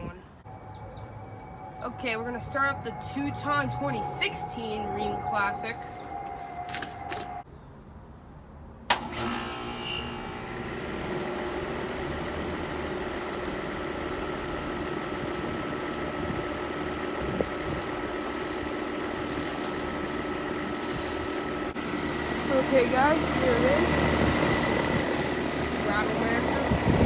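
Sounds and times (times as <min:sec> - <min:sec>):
air conditioner humming: 0:21.8 - 0:27.0.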